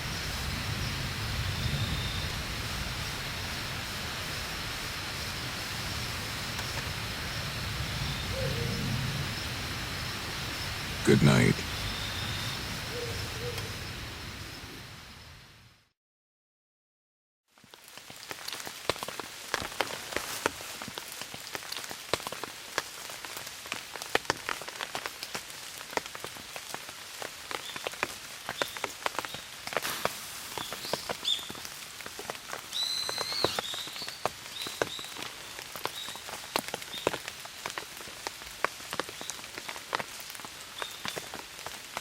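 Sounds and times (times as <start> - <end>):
rain pattering: 2.2 - 8.2, 17.6 - 42.0.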